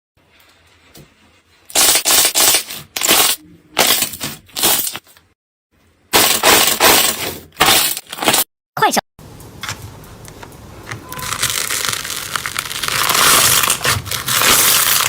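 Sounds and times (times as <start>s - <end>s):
crunchy slime squeezed by hand: 11.2s - 15.0s.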